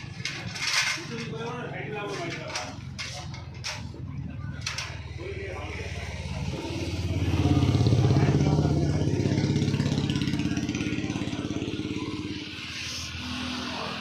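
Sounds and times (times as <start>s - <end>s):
vehicle engine throbbing: 2.9s - 14.0s.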